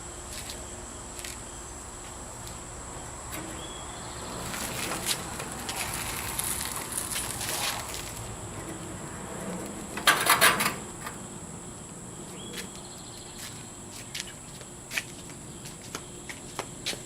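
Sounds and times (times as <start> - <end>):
high-pitched insect chorus: 0.0 - 17.0.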